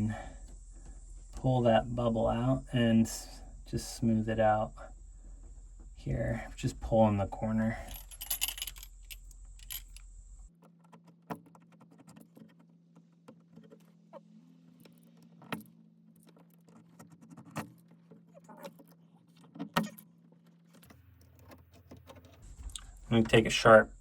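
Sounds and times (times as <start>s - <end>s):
low hum: 0.0s - 10.5s.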